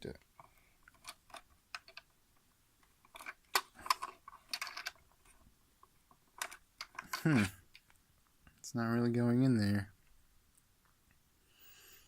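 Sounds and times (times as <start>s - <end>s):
plastic fittings scraping: 3.0s - 5.4s.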